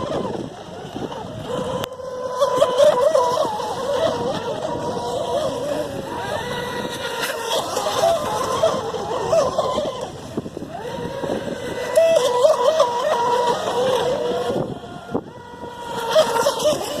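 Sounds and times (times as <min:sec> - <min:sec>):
electric boat motor whine: 0:00.0 - 0:17.0
water noise: 0:00.0 - 0:17.0
wind noise: 0:00.0 - 0:17.0.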